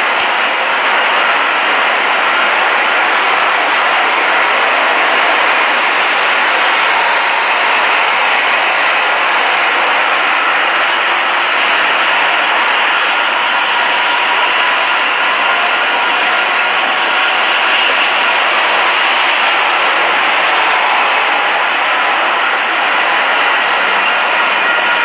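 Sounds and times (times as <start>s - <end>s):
locomotive roaring: 0.0s - 25.0s.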